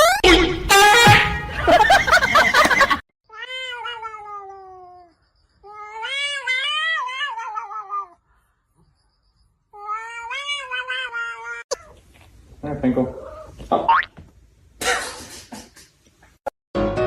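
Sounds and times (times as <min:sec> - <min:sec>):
cat meowing: 0:03.3 - 0:08.2, 0:09.7 - 0:12.0.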